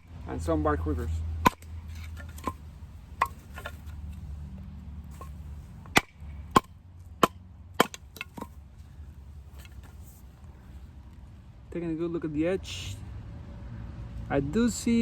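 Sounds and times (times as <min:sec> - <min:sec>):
baton striking knife through wood: 0:01.4 - 0:02.6, 0:05.1 - 0:08.6.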